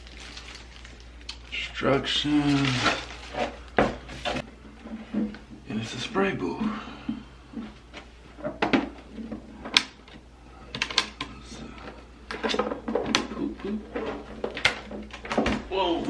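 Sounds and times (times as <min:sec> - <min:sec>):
packaging and booth clattering: 0:02.4 - 0:05.3.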